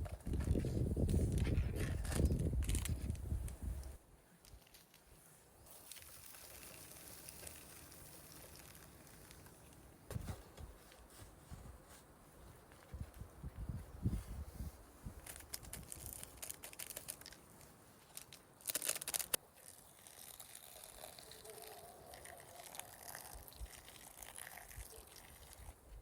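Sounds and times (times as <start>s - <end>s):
rustling and crinkling: 0.0s - 26.0s
small clicks: 15.2s - 19.4s.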